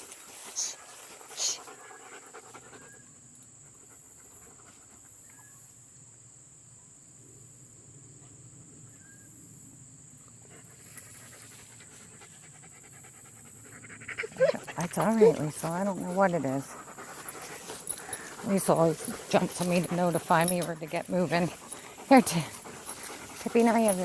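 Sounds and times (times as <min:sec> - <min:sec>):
dog panting softly: 0:00.6 - 0:03.1, 0:10.5 - 0:24.0.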